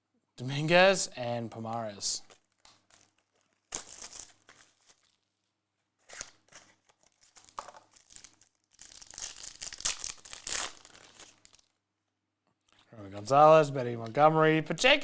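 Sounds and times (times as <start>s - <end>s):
wrapper crinkling and tearing: 2.2s - 11.8s.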